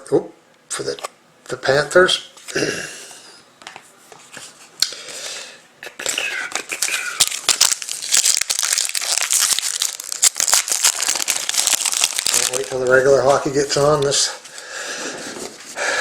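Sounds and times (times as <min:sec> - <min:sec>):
wrapper crinkling and tearing: 0:06.0 - 0:14.2.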